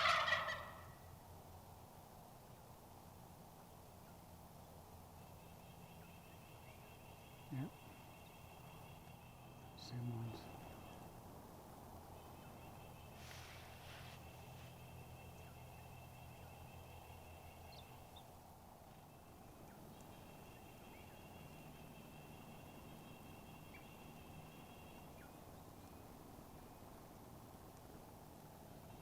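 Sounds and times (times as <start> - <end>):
wild turkey calls: 0.0 - 1.2, 12.2 - 18.3, 18.9 - 27.0.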